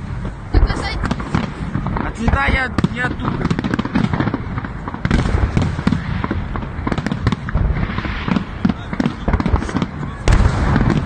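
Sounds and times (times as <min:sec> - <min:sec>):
fireworks popping and banging: 0:00.0 - 0:11.0.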